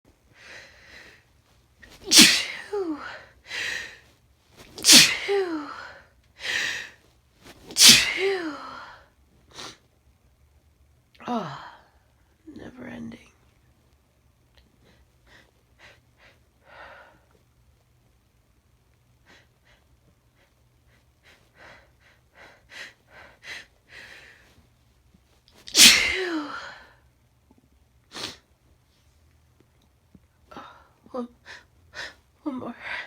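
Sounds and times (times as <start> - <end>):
woman sneezing: 1.9 - 3.1, 4.8 - 5.7, 7.8 - 8.8, 25.6 - 26.8.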